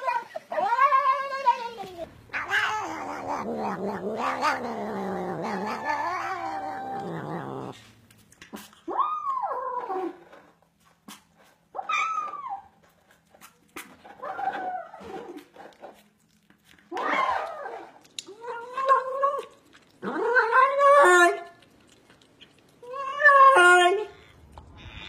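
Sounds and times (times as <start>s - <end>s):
cat yowling and meowing: 0.0s - 7.7s, 22.8s - 25.0s.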